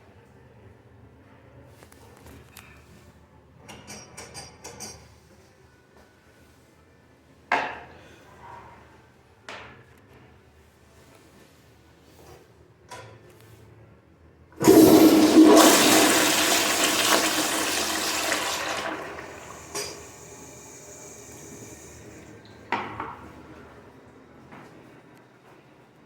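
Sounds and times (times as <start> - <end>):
tank refilling hiss: 14.6 - 22.3
toilet flushing: 14.6 - 23.4.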